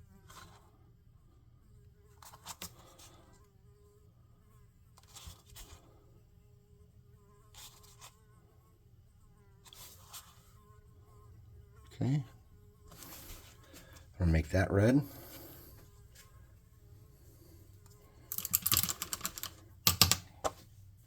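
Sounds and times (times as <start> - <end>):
soft scratchy sounds: 0.1 - 19.8
fly buzzing: 1.8 - 14.2, 15.0 - 18.5.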